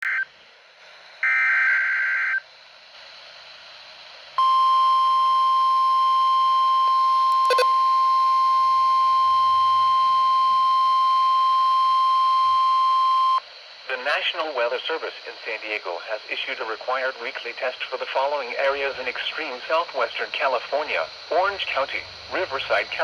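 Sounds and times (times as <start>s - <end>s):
steady warning alarm tone: 4.4s - 13.4s
brief click: 7.3s - 7.7s
harsh data buzz: 7.3s - 10.6s.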